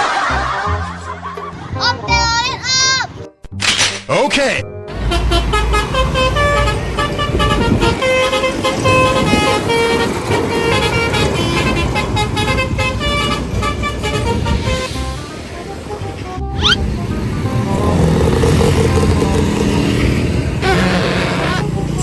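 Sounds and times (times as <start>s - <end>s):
multi-tone bus horn melody: 4.9s - 22.0s.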